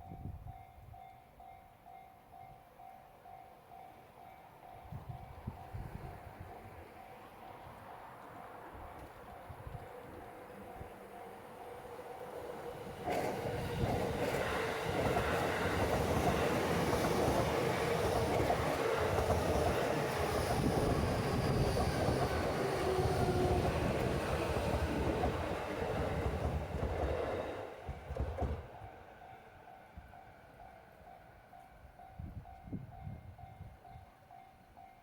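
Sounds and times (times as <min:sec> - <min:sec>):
electric train passing: 0:02.8 - 0:35.0
wheels running on rails: 0:12.6 - 0:28.7.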